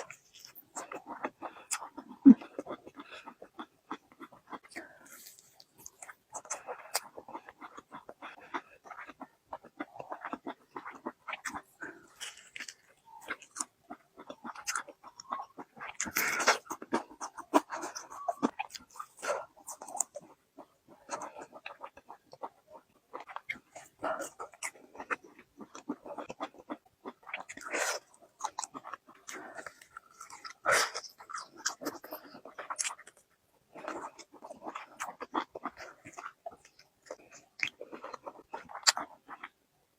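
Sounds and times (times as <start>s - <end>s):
chewing and biting chicken: 0.0s - 39.6s
wet mouth sounds: 0.0s - 39.6s.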